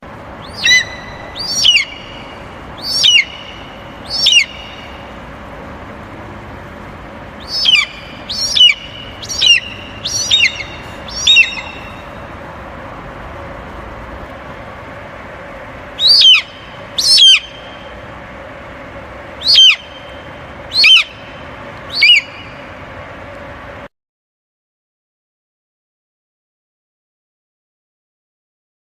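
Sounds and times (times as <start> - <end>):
eagle shrill cries: 0.4 - 5.0, 7.4 - 12.2, 16.0 - 17.9, 19.4 - 22.6.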